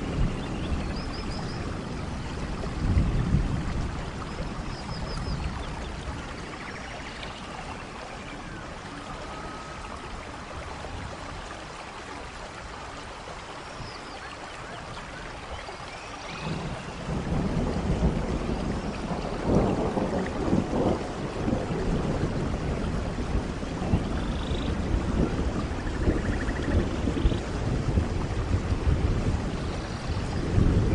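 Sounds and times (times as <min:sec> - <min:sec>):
deep thunder rumble: 0:00.0 - 0:06.6, 0:16.3 - 0:30.9
steady rain falling: 0:00.0 - 0:30.9.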